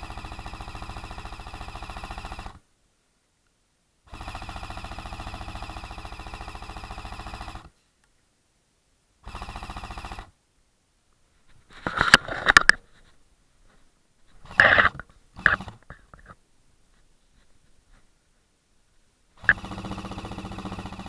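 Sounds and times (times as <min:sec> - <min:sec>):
airsoft gun automatic fire: 0:00.0 - 0:02.6, 0:04.1 - 0:07.7, 0:09.2 - 0:10.3, 0:19.4 - 0:21.0.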